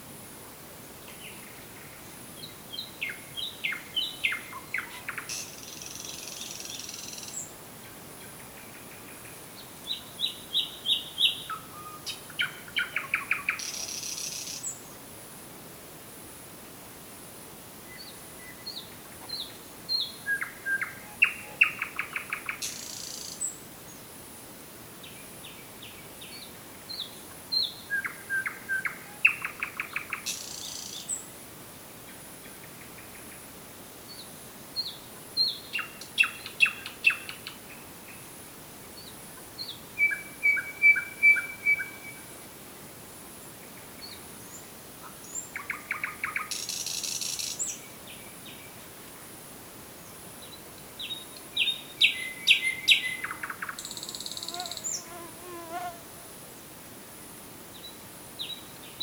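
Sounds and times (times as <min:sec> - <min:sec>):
nightingale singing: 0:01.0 - 0:07.6, 0:08.2 - 0:14.9, 0:17.9 - 0:24.0, 0:25.0 - 0:31.3, 0:34.1 - 0:38.3, 0:39.0 - 0:42.4, 0:43.6 - 0:48.9, 0:50.0 - 0:55.2, 0:57.7 - 0:59.0.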